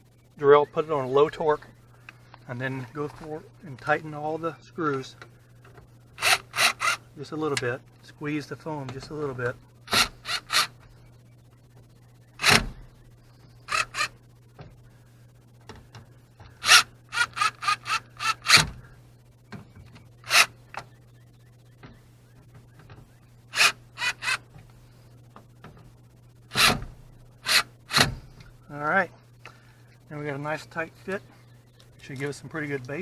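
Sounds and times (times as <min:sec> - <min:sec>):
cordless drill driving screws: 0:06.2 - 0:07.0.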